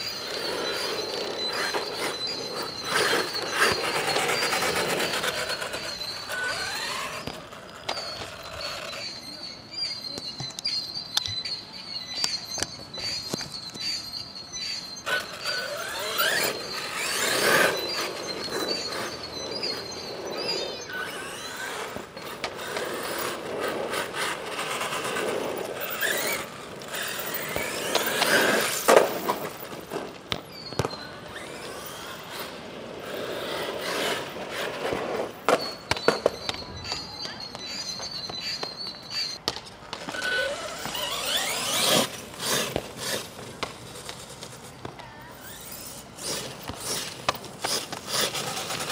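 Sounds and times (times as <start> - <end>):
tyres squealing and scuffing: 0.0 - 11.6, 12.3 - 48.9
electric motor whining: 15.1 - 29.7, 40.1 - 44.2.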